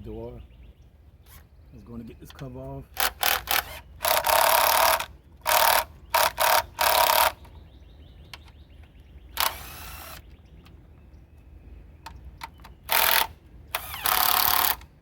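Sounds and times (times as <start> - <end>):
impact wrench bursts: 3.0 - 7.4, 9.4 - 10.2, 12.8 - 14.9.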